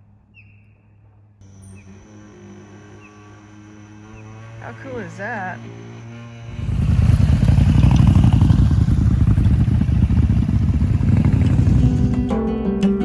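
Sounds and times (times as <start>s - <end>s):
motorcycle engine running: 6.5s - 12.3s.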